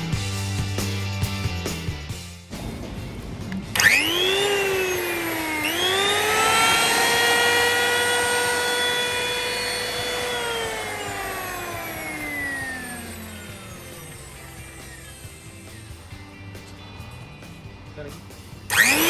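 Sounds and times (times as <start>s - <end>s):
power planer motor whine: 3.8s - 16.7s, 18.7s - 19.0s.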